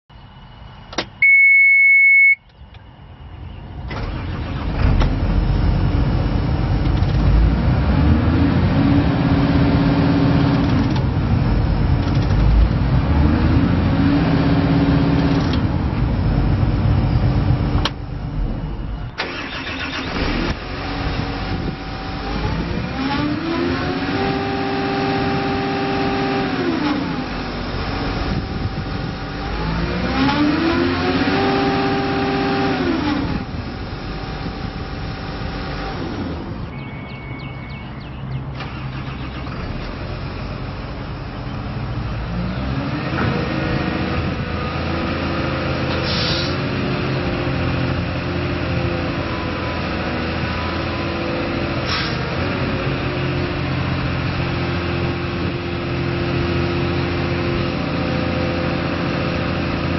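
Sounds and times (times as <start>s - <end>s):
loud steady beep: 1.2s - 2.5s, 36.7s - 38.1s
diesel engine cranking and running: 3.6s - 7.9s, 10.3s - 13.0s, 15.0s - 24.4s, 26.5s - 42.3s.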